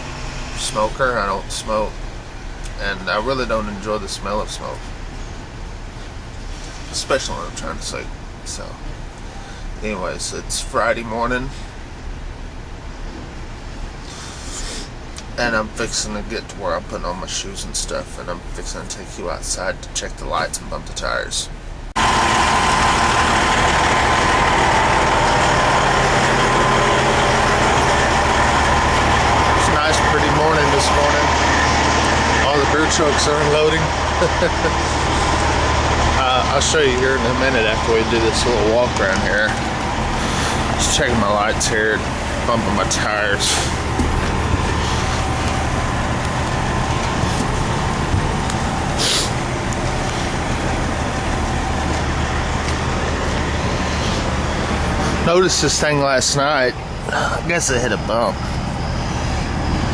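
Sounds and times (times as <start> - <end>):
diesel trucks idling: 0.0 - 59.9
short air hiss: 49.0 - 49.4.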